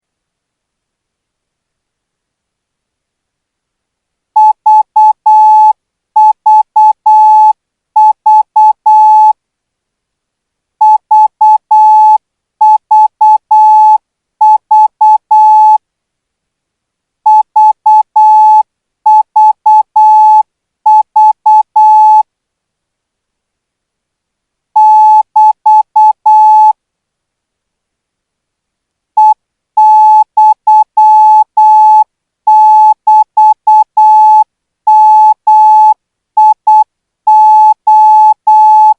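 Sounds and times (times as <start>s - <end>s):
morse code beeps: 4.4s - 9.3s, 10.8s - 15.8s, 17.3s - 22.2s, 24.8s - 26.8s, 29.2s - 38.9s.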